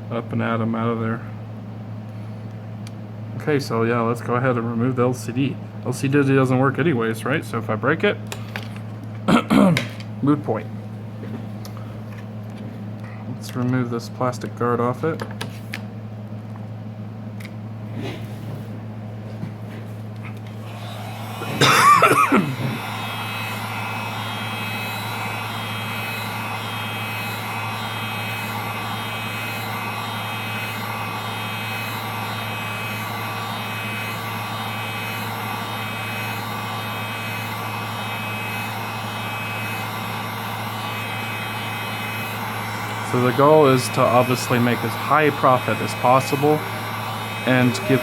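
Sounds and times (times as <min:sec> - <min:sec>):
heat gun fan whine: 0:00.0 - 0:48.0
heat gun blowing: 0:20.2 - 0:48.0.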